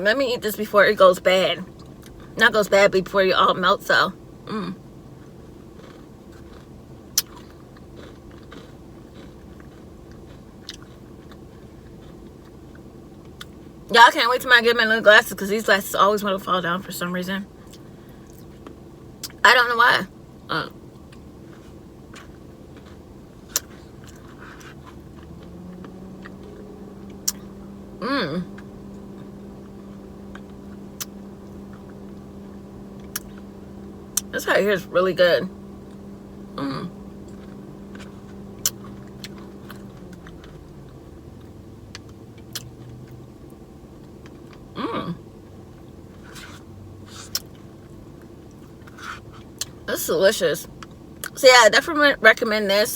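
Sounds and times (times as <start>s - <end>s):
steady low hum: 0.0s - 52.9s
person chewing and swallowing: 5.1s - 13.6s, 20.9s - 34.3s, 35.8s - 43.2s
brief hum: 25.2s - 40.9s.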